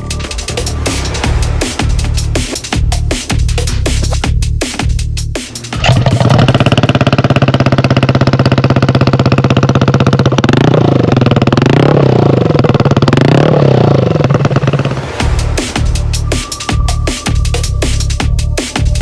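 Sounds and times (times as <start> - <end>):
scooter engine revving: 5.6 - 15.8.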